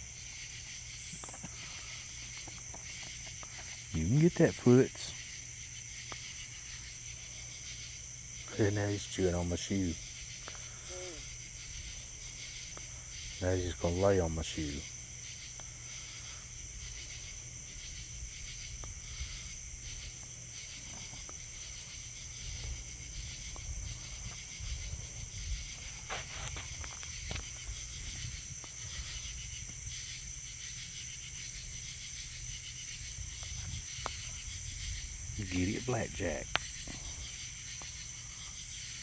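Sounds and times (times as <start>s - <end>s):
crickets chirping: 0.0s - 39.0s.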